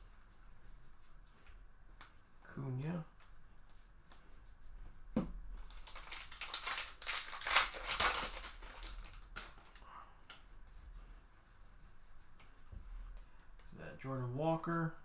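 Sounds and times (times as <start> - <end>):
foil wrapper tearing and crinkling: 5.6 - 9.8.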